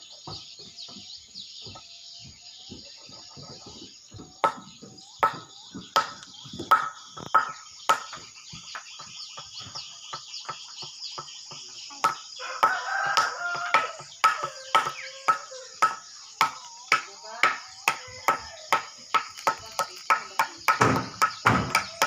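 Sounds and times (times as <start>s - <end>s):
rooster crowing: 12.4s - 18.9s.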